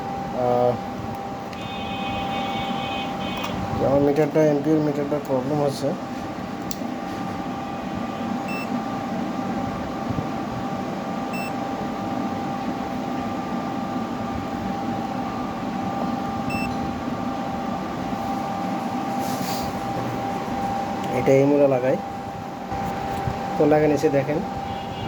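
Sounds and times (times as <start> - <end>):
electrical hum and whine: 0.0 - 25.0
transformers buzzing: 1.1 - 4.0.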